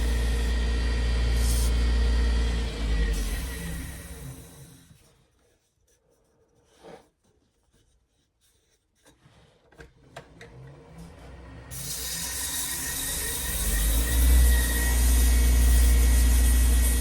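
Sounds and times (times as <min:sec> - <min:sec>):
power tool hissing: 0:00.0 - 0:04.8, 0:11.7 - 0:17.0.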